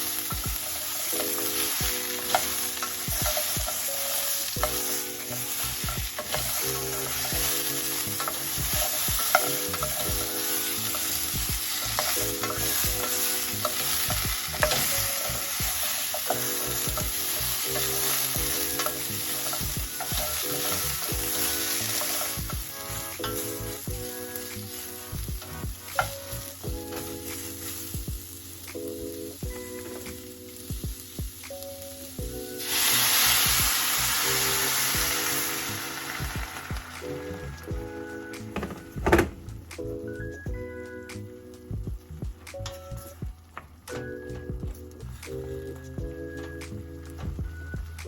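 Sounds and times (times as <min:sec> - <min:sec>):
food sizzling in hot oil: 0:00.0 - 0:43.6
utensil scraping a pan: 0:00.6 - 0:27.9.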